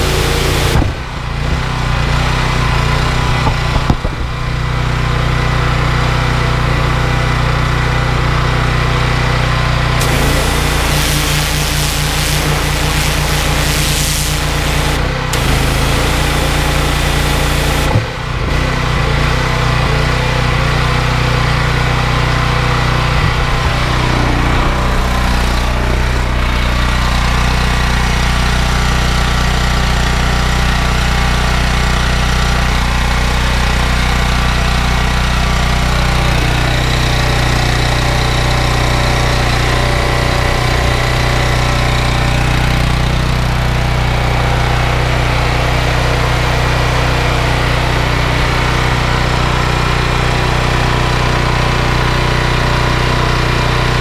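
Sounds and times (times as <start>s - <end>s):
petrol engine running: 0.0s - 4.4s, 10.0s - 18.5s.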